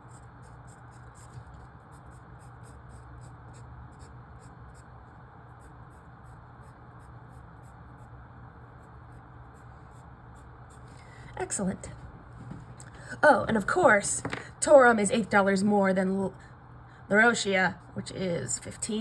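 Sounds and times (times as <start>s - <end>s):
pen scratching on paper: 0.0s - 4.9s, 5.5s - 10.8s.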